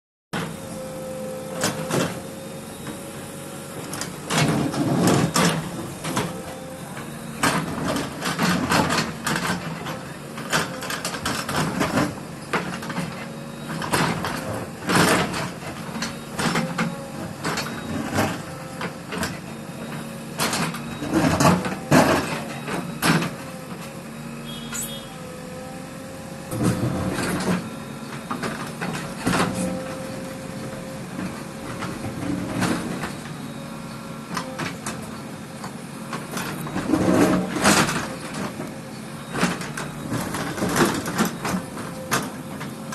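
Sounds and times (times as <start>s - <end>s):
low machine hum: 0.4s - 42.9s.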